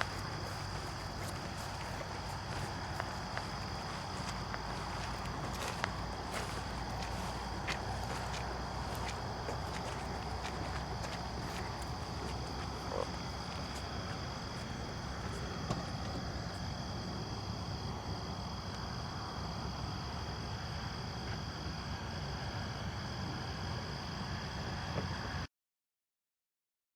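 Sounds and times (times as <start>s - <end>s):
low background rumble: 0.0s - 17.6s
insects trilling: 0.0s - 25.4s.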